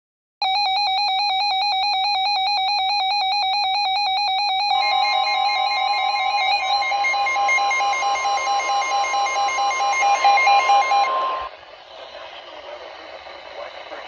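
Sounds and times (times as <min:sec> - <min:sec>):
rapid high pulsing beep: 0:00.4 - 0:11.4
steady warning tone: 0:00.4 - 0:14.0
radio broadcast hiss: 0:09.5 - 0:14.0.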